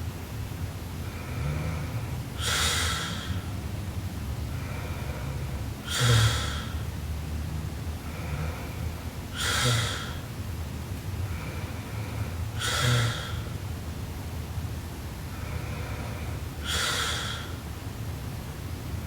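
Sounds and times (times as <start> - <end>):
woman snoring: 1.2 - 3.4, 4.6 - 6.8, 9.4 - 10.2, 11.4 - 13.5, 16.6 - 17.6.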